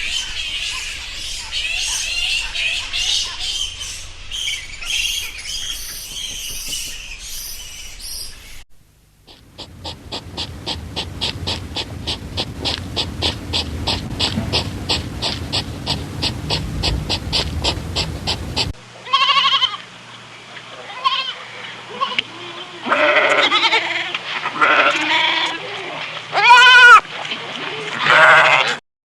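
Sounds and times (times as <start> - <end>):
animal high chirps: 9.3 - 18.8.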